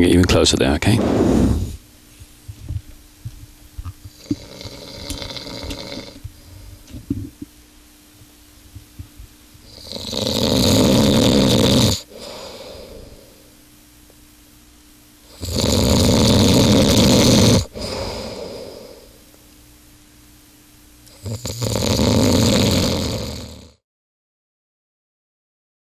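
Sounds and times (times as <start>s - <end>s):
faint steady hum: 0.0s - 23.8s
soft hissing breath: 0.8s - 2.2s, 4.1s - 7.1s, 9.6s - 13.7s, 15.2s - 19.5s
man snoring loudly: 4.1s - 6.2s, 9.6s - 13.5s, 15.3s - 19.2s, 21.1s - 23.8s.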